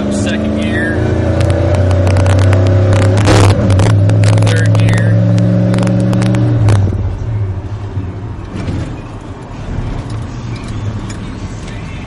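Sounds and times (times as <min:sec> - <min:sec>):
pickup engine at high revs: 0:00.0 - 0:07.0
road noise: 0:00.0 - 0:12.0.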